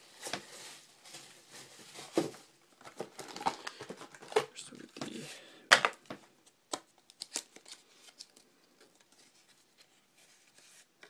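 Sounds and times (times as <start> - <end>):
trading cards rustling and clicking: 6.7 - 10.6.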